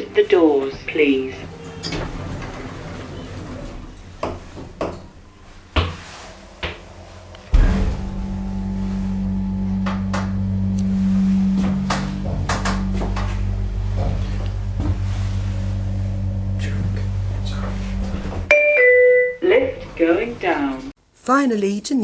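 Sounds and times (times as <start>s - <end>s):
lift machinery humming: 0.0s - 20.9s
lift doors closing: 0.3s - 6.5s
lift machinery thump: 7.5s - 18.5s.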